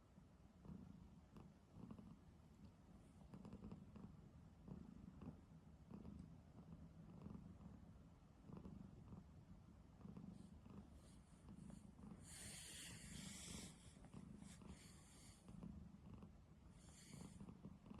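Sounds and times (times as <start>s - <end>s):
cat snoring: 0.6s - 2.2s, 3.2s - 6.2s, 7.0s - 7.8s, 8.4s - 9.3s, 10.0s - 18.0s
airy breath hiss: 12.2s - 14.0s.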